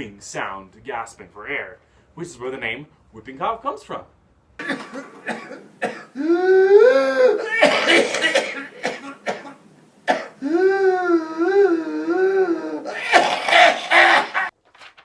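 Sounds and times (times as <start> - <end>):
person coughing harshly: 4.6 - 10.8, 12.8 - 14.5.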